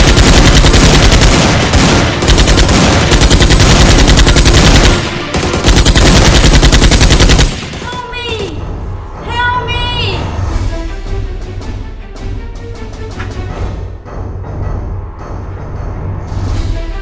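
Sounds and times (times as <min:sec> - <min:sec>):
machine-gun fire: 0:00.0 - 0:08.5.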